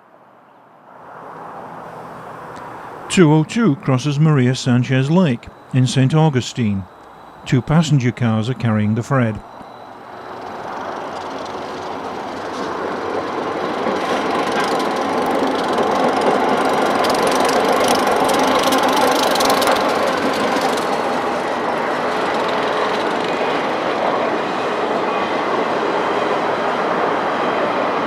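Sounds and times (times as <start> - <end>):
diesel locomotive: 0.9 - 28.0
train wheels clattering over rails: 9.5 - 28.0.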